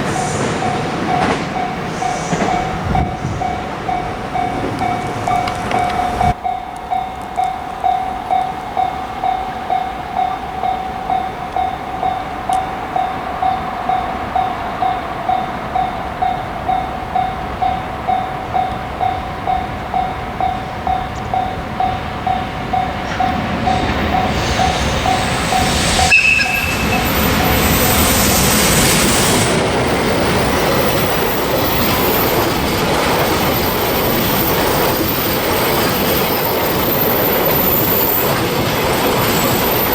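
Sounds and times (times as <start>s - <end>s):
level-crossing warning bell dinging: 0.0s - 39.9s
train rumble: 0.0s - 39.9s
brief high tone: 25.6s - 27.3s.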